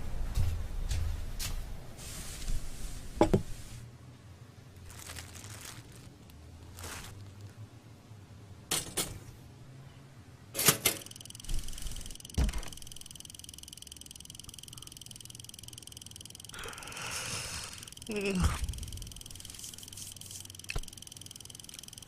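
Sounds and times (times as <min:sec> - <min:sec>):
clicks: 0:10.6 - 0:16.9, 0:17.6 - 0:22.0
high-pitched chirring: 0:11.0 - 0:22.0
thumps: 0:11.5 - 0:13.0.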